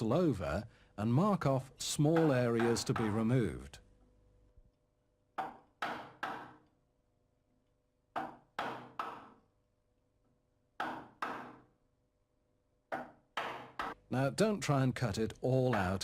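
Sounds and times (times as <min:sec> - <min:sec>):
wooden mallet striking chisel: 0:02.1 - 0:03.2, 0:05.4 - 0:06.7, 0:08.1 - 0:09.5, 0:10.8 - 0:11.7, 0:12.9 - 0:14.0, 0:15.6 - 0:16.0.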